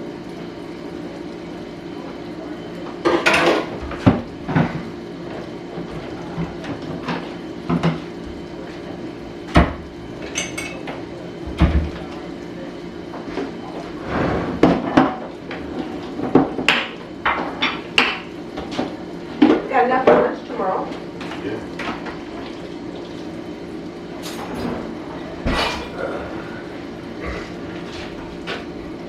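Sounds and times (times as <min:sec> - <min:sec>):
dishes and cutlery clinking: 0:10.3 - 0:11.0, 0:25.5 - 0:26.0.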